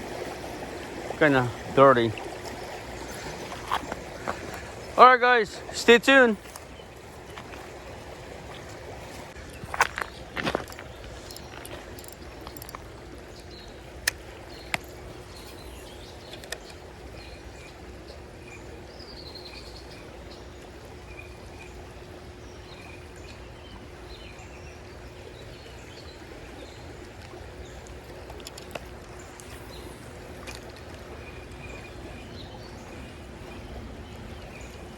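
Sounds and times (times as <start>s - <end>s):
creek water running: 0.0s - 34.9s
sharp clicks: 10.7s - 12.9s.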